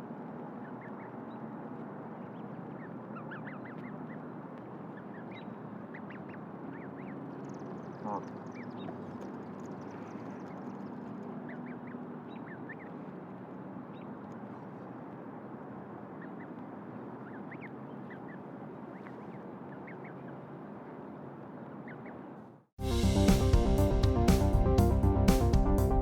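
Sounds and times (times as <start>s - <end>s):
duckling peeping: 2.3s - 10.8s, 11.4s - 13.0s, 17.2s - 20.2s.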